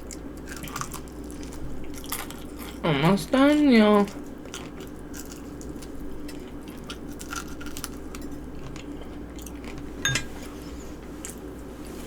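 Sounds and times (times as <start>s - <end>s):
chewing and biting food: 0.0s - 2.8s, 4.1s - 10.5s
steady low hum: 0.0s - 12.0s.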